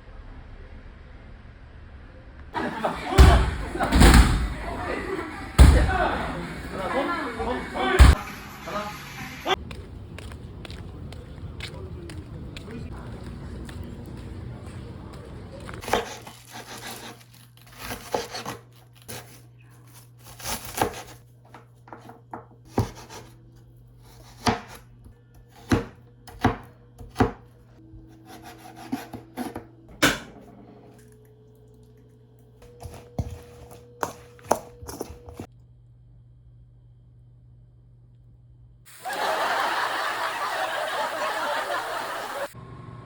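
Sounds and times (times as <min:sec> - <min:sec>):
knife chopping on cutting board: 0:17.8 - 0:19.3, 0:20.4 - 0:21.2, 0:21.9 - 0:23.3, 0:24.1 - 0:24.8, 0:25.6 - 0:27.4, 0:28.3 - 0:30.3.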